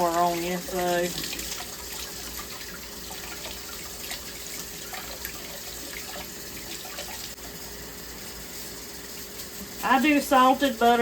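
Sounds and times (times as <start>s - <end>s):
small water splashes: 0.0s - 7.4s
tap water running into sink: 0.0s - 7.6s.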